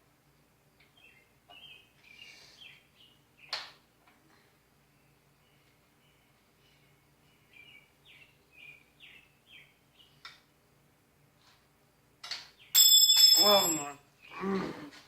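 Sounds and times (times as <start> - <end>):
small bird chirping: 0.8 - 3.7, 4.9 - 10.3
sharp metallic ring: 12.8 - 14.0.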